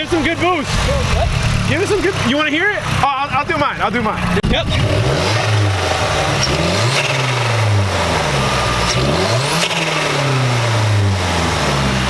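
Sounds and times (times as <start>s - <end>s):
car engine revving: 0.0s - 12.0s
turbo fluttering: 0.3s - 9.0s.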